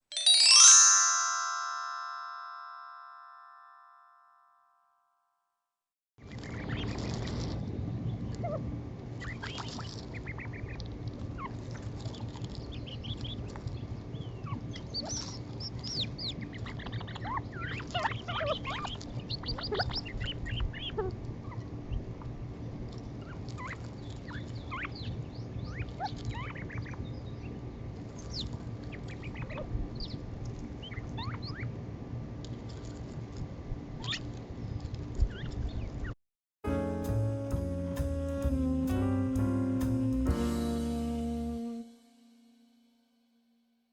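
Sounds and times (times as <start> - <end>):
steady low hum: 6.2 - 42.0
quail chirping and peeping: 6.3 - 22.4, 23.0 - 31.8, 34.0 - 36.2.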